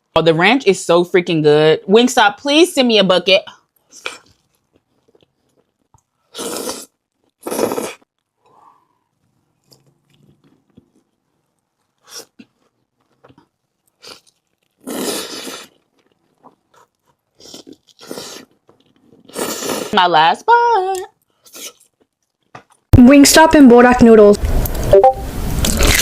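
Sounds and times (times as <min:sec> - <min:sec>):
quiet chewing: 0:03.6 - 0:19.9, 0:21.2 - 0:22.9
fried chicken crunching: 0:09.6 - 0:19.4, 0:25.6 - 0:26.0.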